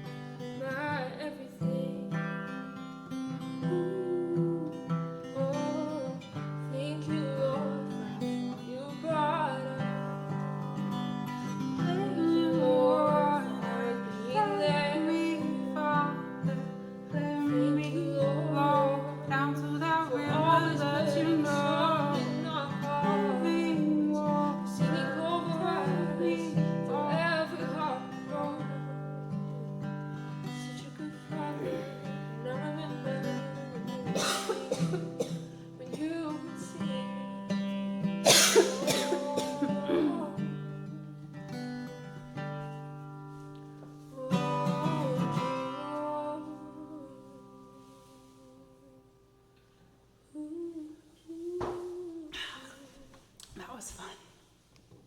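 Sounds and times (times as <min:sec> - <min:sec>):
acoustic guitar strumming: 0:00.0 - 0:49.6
person singing: 0:11.5 - 0:35.2, 0:38.3 - 0:41.2, 0:44.2 - 0:49.0.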